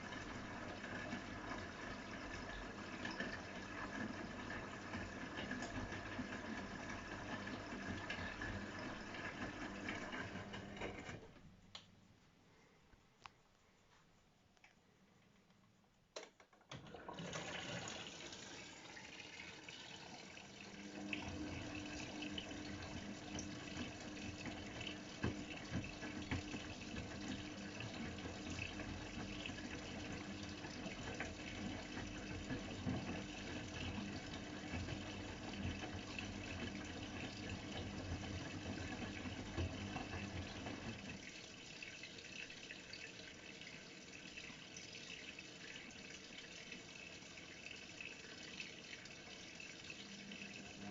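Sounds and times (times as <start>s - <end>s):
water rushing into machine: 16.7s - 50.9s
washing machine clicks: 21.1s - 41.3s.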